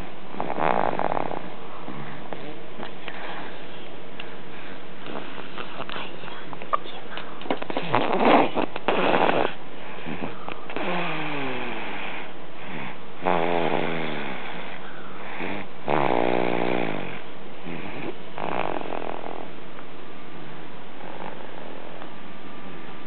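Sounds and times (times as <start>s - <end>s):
baby snoring: 0.3s - 2.6s, 7.6s - 19.6s, 21.0s - 22.0s.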